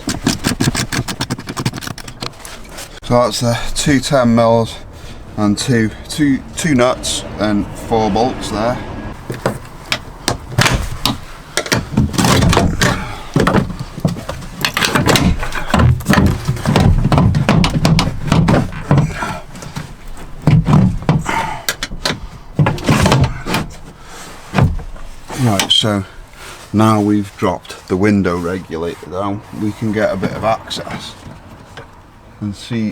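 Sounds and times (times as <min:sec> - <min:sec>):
metal clunks and rattles: 0:00.0 - 0:03.0, 0:09.1 - 0:26.4.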